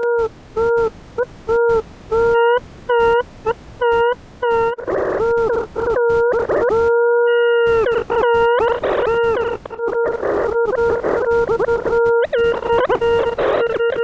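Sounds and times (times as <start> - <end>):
bursts of static: 0.0 - 14.0
warbling electronic tones: 3.8 - 14.0.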